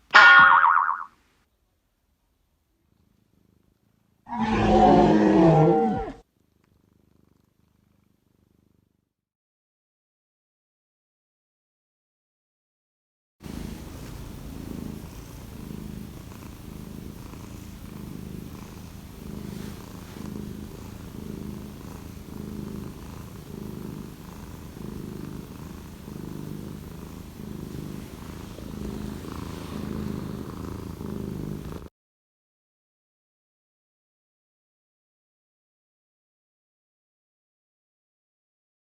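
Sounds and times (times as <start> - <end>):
cat purring: 2.2 - 4.3, 6.0 - 9.2, 13.4 - 31.9.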